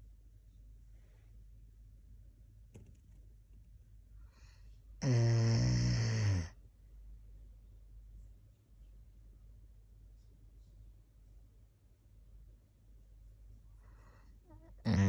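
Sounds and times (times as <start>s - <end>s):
dog snoring: 5.0s - 6.6s, 14.5s - 15.0s.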